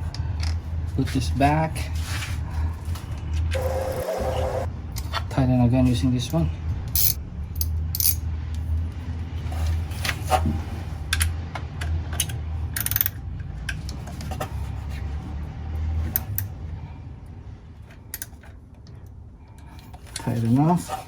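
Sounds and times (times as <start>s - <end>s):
hand ratchet clicking: 7.0s - 8.2s.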